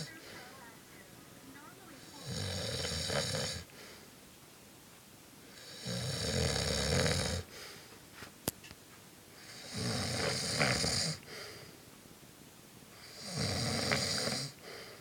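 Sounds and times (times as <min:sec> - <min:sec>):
man snoring loudly: 0:02.2 - 0:03.7, 0:05.6 - 0:07.5, 0:09.4 - 0:11.2, 0:13.0 - 0:14.6.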